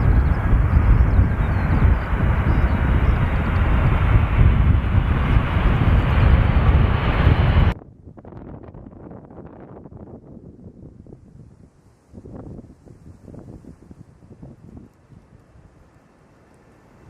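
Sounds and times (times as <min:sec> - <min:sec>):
jet engines roaring: 0:00.0 - 0:07.8
faint wind: 0:00.0 - 0:17.0.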